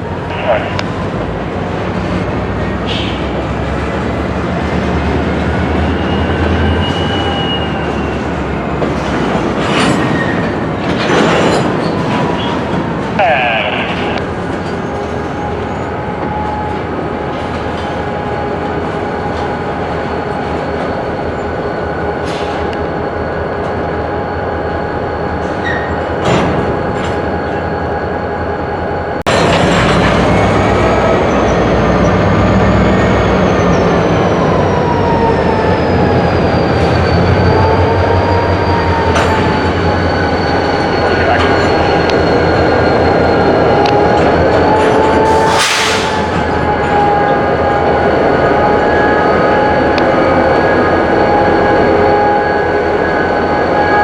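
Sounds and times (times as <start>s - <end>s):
freight cars rumbling on track: 0.0s - 54.0s
wheel squeal: 5.6s - 8.4s, 24.3s - 28.0s, 32.8s - 49.8s.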